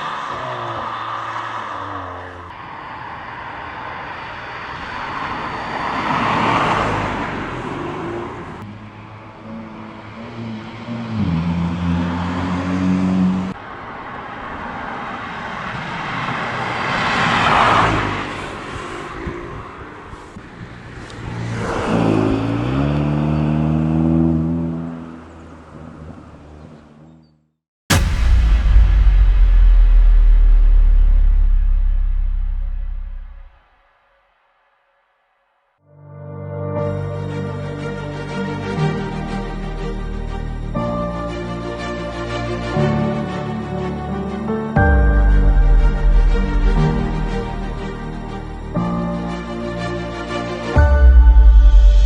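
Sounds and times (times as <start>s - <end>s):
car accelerating and passing by: 0.0s - 13.6s, 14.3s - 27.2s.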